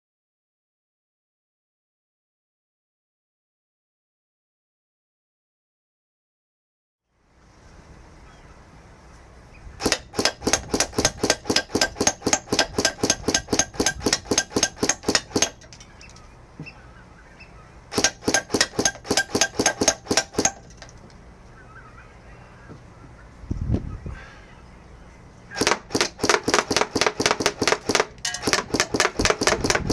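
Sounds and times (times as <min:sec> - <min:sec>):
airsoft gun firing rapid shots: 0:09.8 - 0:15.6, 0:17.9 - 0:20.6, 0:25.6 - 0:29.9.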